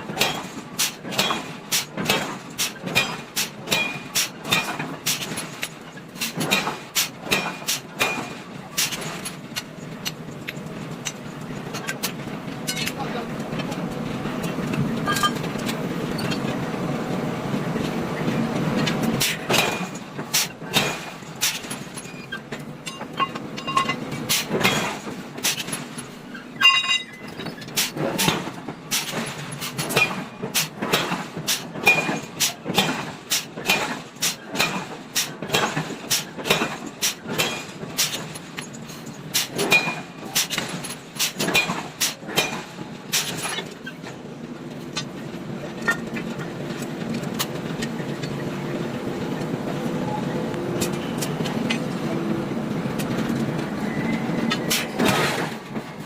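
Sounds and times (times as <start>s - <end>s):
hammer striking hot iron on anvil: 2.9s - 5.2s.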